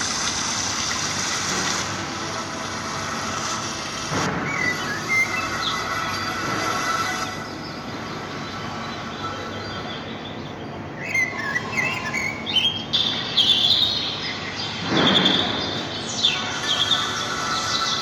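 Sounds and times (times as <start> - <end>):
birds chirping: 4.3 - 18.0.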